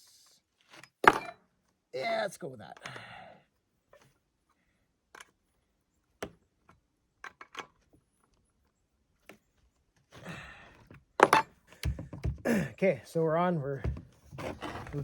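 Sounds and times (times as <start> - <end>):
tool clicking and knocking: 11.2 - 12.4, 13.8 - 14.2.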